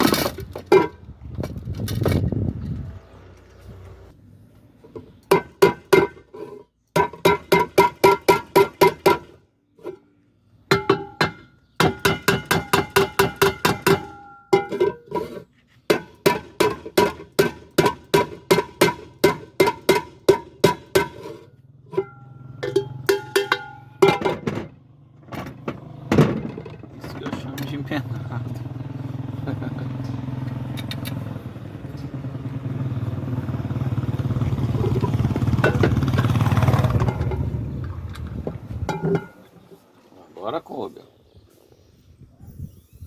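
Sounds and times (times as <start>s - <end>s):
hammer striking metal pot: 7.0s - 9.4s, 10.7s - 15.0s, 15.9s - 24.6s.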